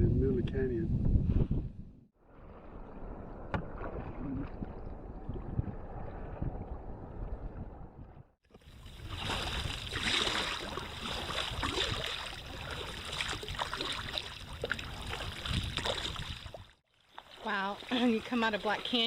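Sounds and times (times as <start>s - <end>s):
water splashing against kayak hull: 8.5s - 19.0s.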